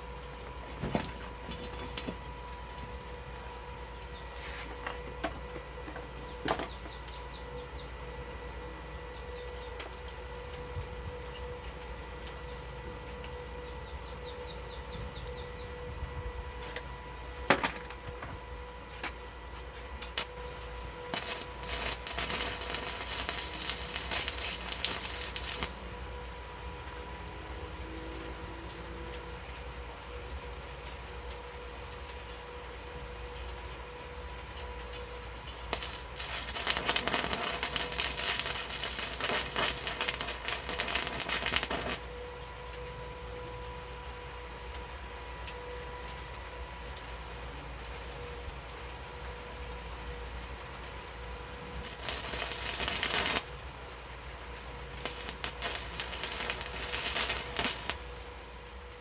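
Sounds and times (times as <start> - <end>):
welding arc crackling: 0.0 - 15.6, 16.7 - 27.2, 33.7 - 42.9, 51.0 - 59.0
faint hum: 0.0 - 59.0
faint steady whine: 0.0 - 59.0.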